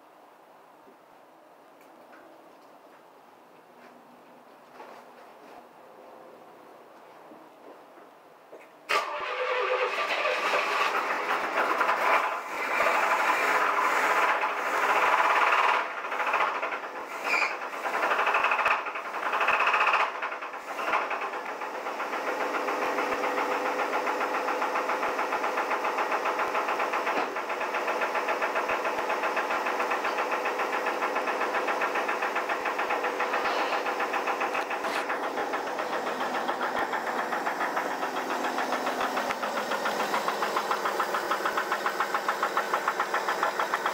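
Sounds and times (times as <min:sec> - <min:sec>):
car engine idling with knock: 0:10.5 - 0:43.9.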